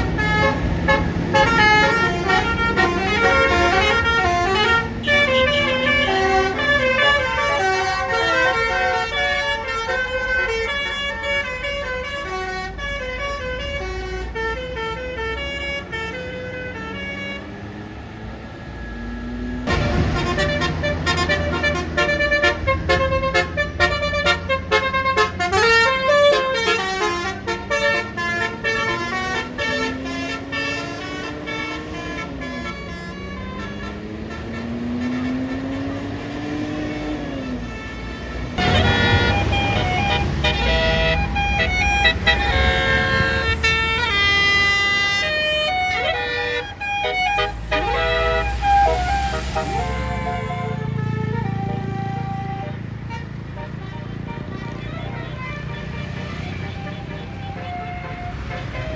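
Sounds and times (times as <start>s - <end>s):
musical bus air horn melodies: 0.0s - 17.7s, 19.6s - 58.9s
wailing siren-like tone: 17.6s - 20.0s, 38.6s - 52.7s
rush of noise: 45.9s - 51.6s.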